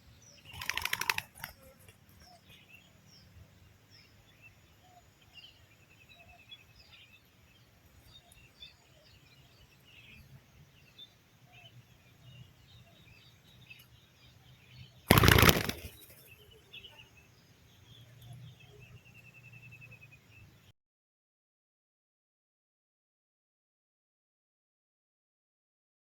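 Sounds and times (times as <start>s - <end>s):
small birds chirping: 0.0s - 20.7s
wing flaps: 0.5s - 1.9s, 15.1s - 16.3s.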